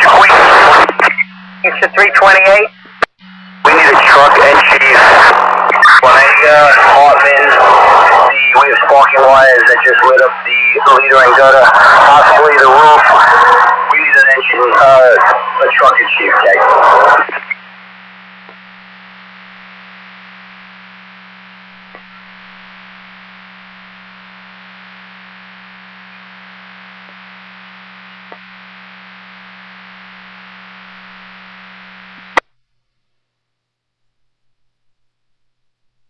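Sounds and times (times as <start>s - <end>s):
radio clicks: 0.0s - 2.0s, 2.8s - 6.0s, 17.2s - 18.9s, 21.7s - 22.8s, 26.0s - 32.5s
radio static hiss: 0.0s - 32.4s.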